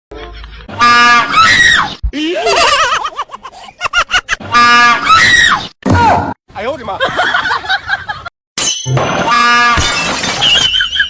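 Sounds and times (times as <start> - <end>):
person laughing: 2.2 - 4.4, 7.0 - 8.3.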